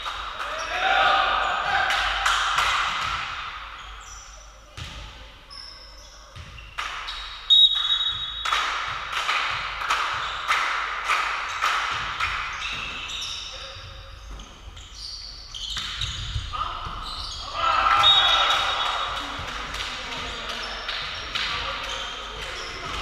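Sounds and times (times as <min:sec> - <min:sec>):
volleyball hits echoing: 0:00.0 - 0:04.0, 0:06.4 - 0:14.7, 0:15.7 - 0:23.0
high whistle: 0:07.2 - 0:08.4, 0:17.9 - 0:19.0.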